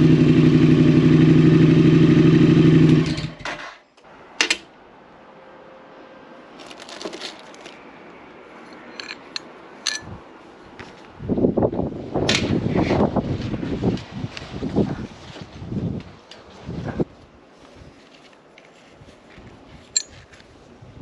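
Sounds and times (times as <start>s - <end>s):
motorcycle engine idling: 0.0s - 3.0s.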